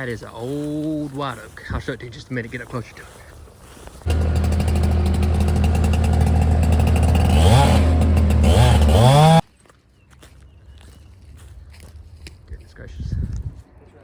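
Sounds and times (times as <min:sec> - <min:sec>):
engine running and revving: 0:04.1 - 0:09.4.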